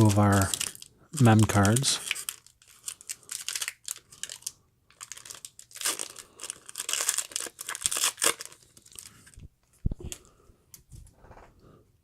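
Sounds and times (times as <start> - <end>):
foil wrapper crinkling: 0.0 - 9.4.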